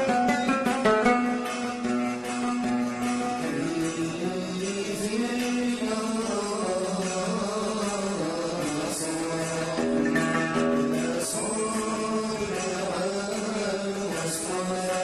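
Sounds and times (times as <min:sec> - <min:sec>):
plucked string instrument melody: 0:00.0 - 0:15.0
man singing: 0:03.0 - 0:15.0.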